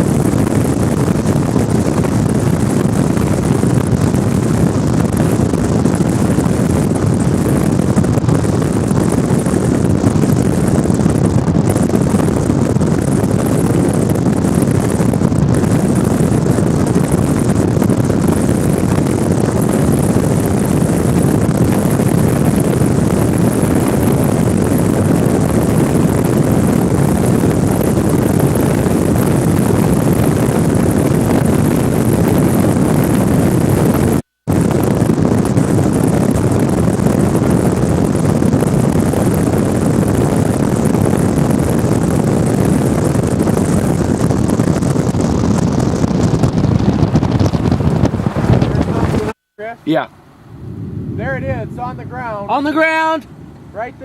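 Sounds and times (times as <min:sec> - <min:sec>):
vehicle engine rumble: 0:00.0 - 0:54.0
road noise: 0:43.4 - 0:54.0.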